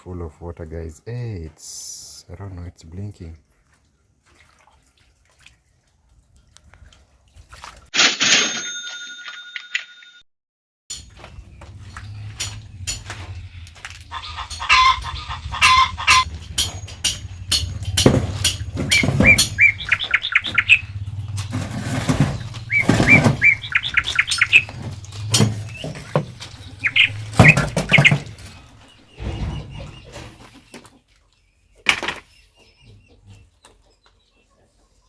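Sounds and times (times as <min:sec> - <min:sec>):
bird chirping: 0:11.0 - 0:35.0
low rumble: 0:11.4 - 0:27.6
knocks: 0:15.6 - 0:28.6.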